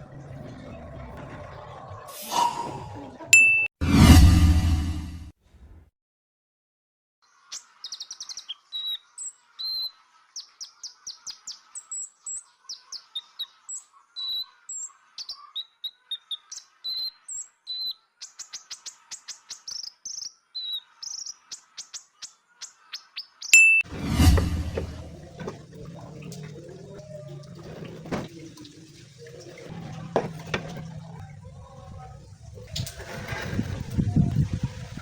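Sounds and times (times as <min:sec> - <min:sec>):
bird chirping and trilling: 0:23.0 - 0:23.9.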